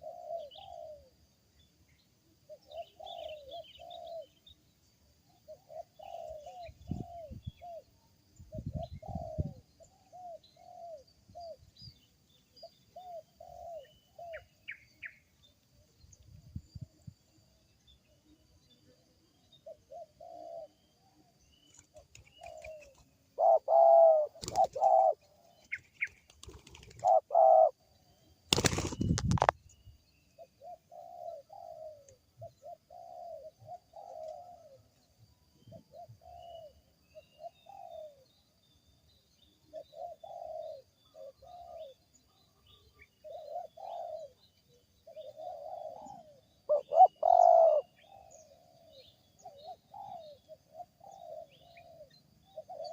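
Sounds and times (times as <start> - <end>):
dove cooing: 0.0 - 1.2, 2.5 - 4.3, 5.5 - 11.6, 12.6 - 14.8, 19.6 - 21.2, 21.9 - 27.9, 30.4 - 34.9, 35.7 - 38.2, 39.7 - 52.9.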